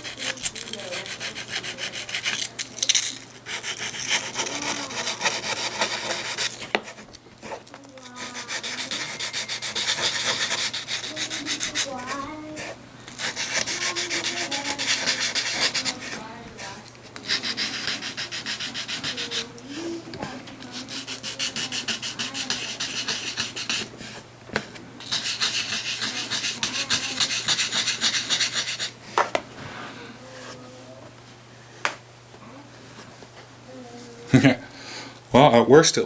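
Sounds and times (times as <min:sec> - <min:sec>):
rubbing on hard plastic: 0:00.0 - 0:30.8.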